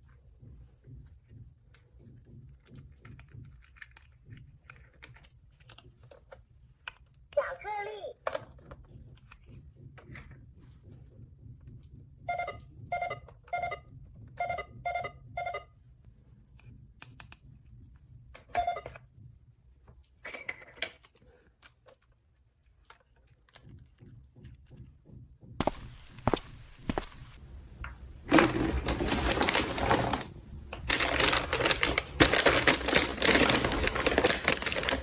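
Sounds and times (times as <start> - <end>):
toy electronic beeps: 12.3 - 13.8, 14.4 - 15.7.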